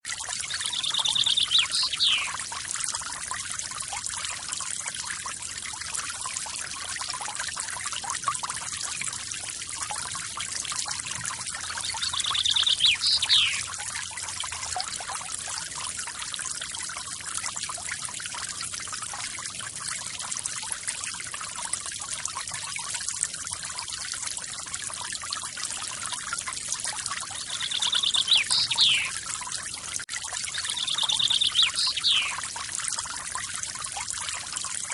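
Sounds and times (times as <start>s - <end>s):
bird trill and whistle: 0.5s - 2.4s, 11.8s - 13.7s, 27.4s - 29.2s, 30.5s - 32.4s.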